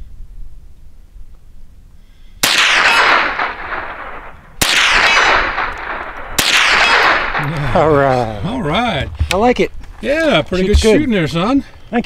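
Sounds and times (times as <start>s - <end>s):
rifle shots echoing: 2.4s - 8.1s.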